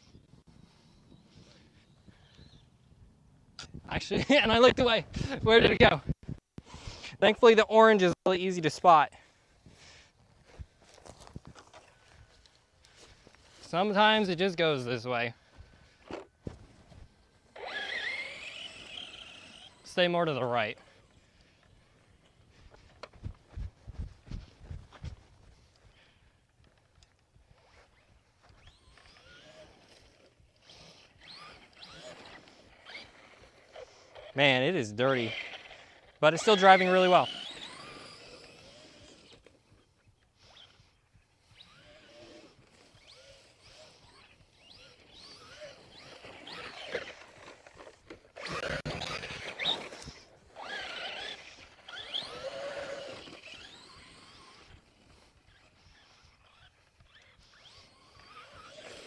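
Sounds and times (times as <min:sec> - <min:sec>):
toy truck electric motor whine: 0:17.2 - 0:20.1, 0:27.5 - 0:59.0.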